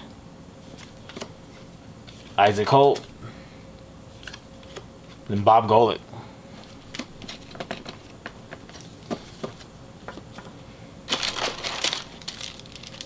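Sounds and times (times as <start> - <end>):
card pack wrapper crinkling: 11.1 - 13.0.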